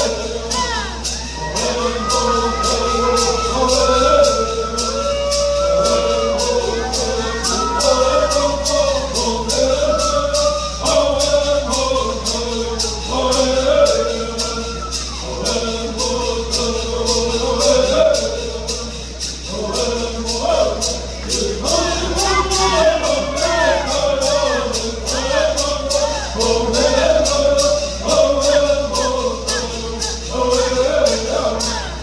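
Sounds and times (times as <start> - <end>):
gourd rattles shaken: 0.0 - 32.0
men singing in unison: 0.0 - 32.0.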